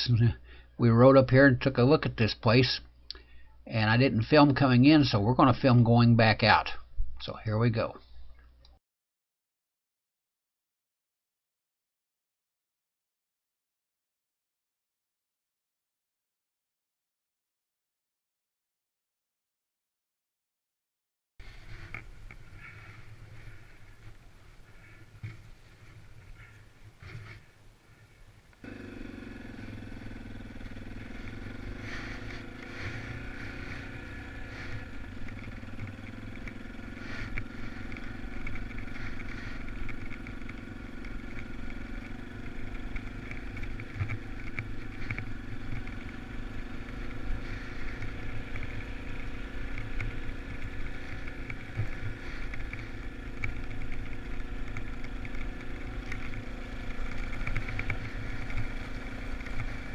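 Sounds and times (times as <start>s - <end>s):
motorcycle engine running: 21.4s - 59.9s.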